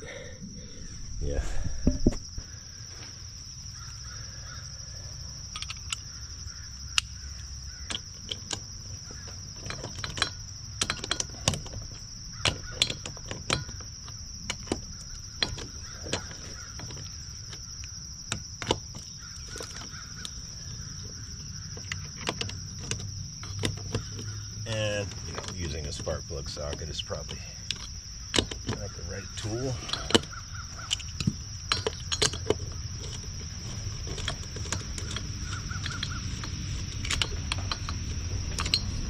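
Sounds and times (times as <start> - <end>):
high insect drone: 0.0 - 39.0
socket wrench clicking: 5.6 - 6.1, 29.9 - 39.0.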